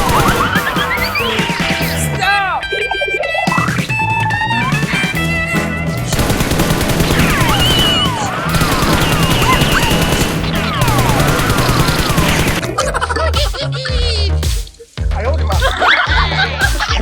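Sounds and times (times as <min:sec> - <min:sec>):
rapid gunfire sound effects: 0:00.0 - 0:02.0, 0:06.1 - 0:12.6
background music with bass line: 0:00.0 - 0:17.0.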